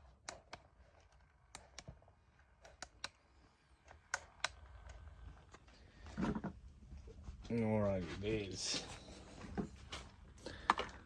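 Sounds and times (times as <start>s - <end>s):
plastic toy figures clicking: 0.2s - 5.6s.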